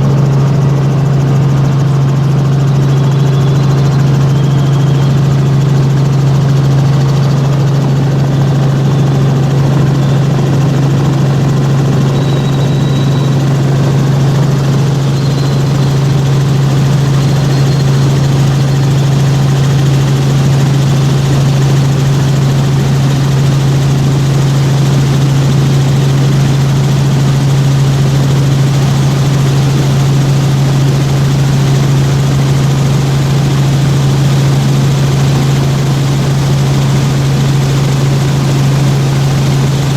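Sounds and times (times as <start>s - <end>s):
constant rush of noise: 0.0s - 39.9s
helicopter rotor and engine drone: 0.0s - 39.9s.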